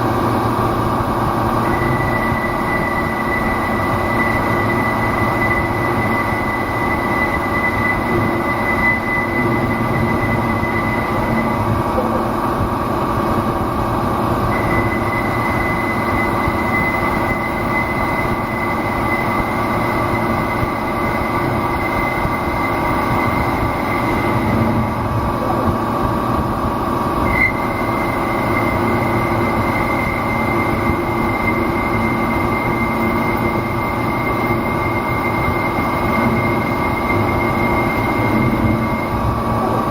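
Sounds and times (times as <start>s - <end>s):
high thin machine whine: 0.0s - 39.9s
lathe mechanical running noise: 0.0s - 39.9s.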